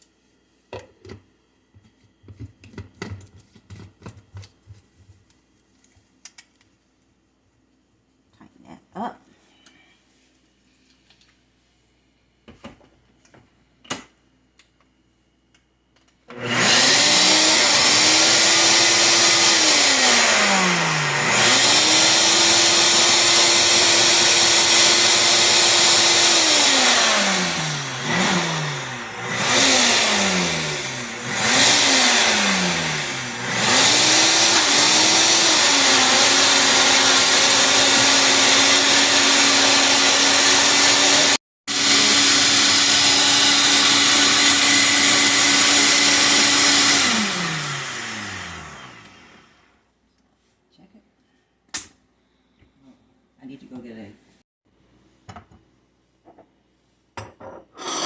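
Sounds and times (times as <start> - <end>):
blender motor running: 16.3 - 49.8.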